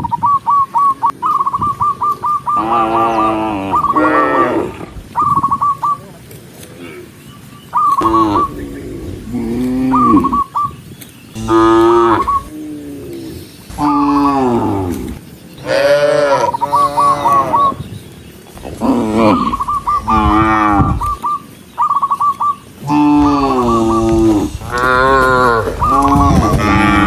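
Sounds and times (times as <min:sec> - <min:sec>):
cattle mooing: 0:02.6 - 0:05.0, 0:11.4 - 0:12.9, 0:13.7 - 0:17.7, 0:18.6 - 0:21.2, 0:22.8 - 0:27.0.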